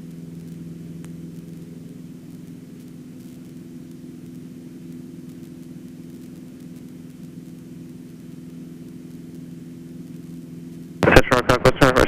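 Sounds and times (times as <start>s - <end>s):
light aircraft engine droning: 0.0s - 12.0s.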